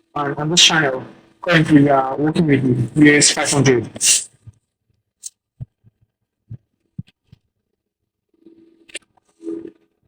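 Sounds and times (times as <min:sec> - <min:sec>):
muffled noise: 0:05.5 - 0:10.0.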